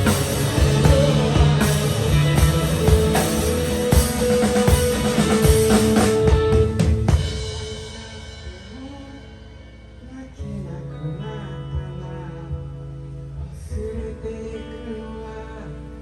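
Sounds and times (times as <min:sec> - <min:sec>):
low bass note: 0:00.0 - 0:06.4
full band chord: 0:00.0 - 0:09.4
electric guitar playing: 0:00.0 - 0:10.1.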